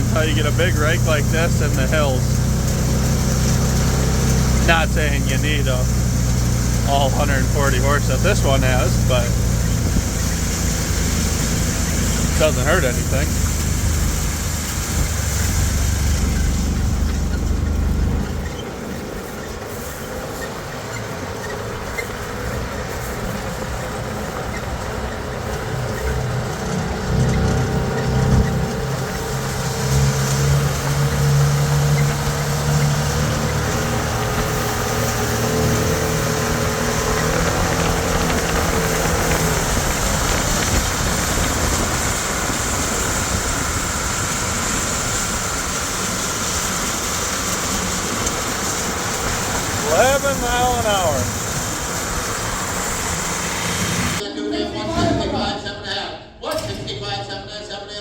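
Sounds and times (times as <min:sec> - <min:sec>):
heavy low rumble: 0:00.0 - 0:18.6
tractor engine running under load: 0:00.0 - 0:54.2.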